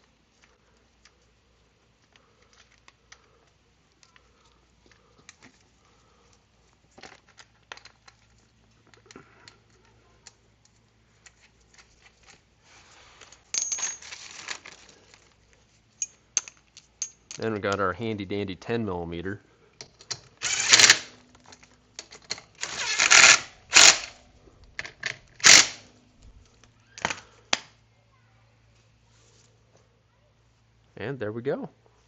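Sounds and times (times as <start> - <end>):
metal parts clicking: 13.2 - 15.3, 16.0 - 17.8, 19.8 - 24.2, 24.8 - 25.8
metallic clatter of tools: 13.5 - 14.2.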